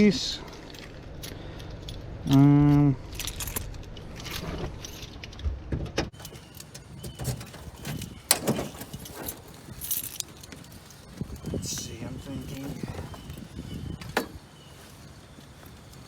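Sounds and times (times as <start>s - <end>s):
keys jangling: 6.2s - 14.4s.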